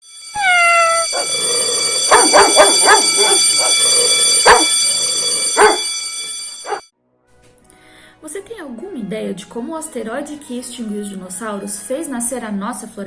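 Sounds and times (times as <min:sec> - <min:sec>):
dog yelping: 0:00.4 - 0:04.9, 0:05.5 - 0:05.9, 0:06.6 - 0:06.8
dog barking: 0:01.0 - 0:01.4, 0:02.1 - 0:04.9, 0:05.5 - 0:05.9.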